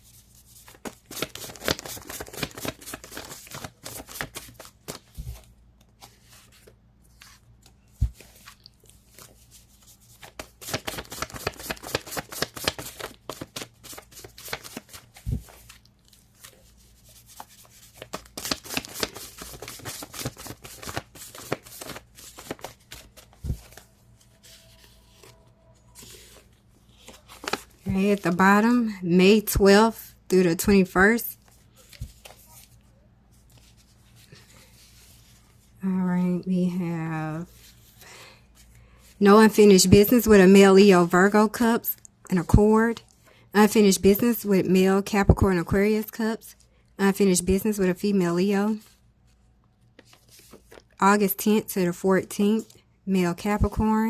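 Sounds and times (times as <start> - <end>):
cards being shuffled: 0.6 - 25.4, 26.0 - 27.9, 50.0 - 50.9.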